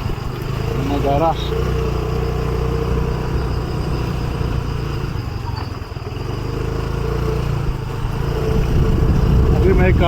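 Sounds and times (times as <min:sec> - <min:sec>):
motorcycle engine running: 0:00.0 - 0:10.0
wind and road noise: 0:00.0 - 0:10.0.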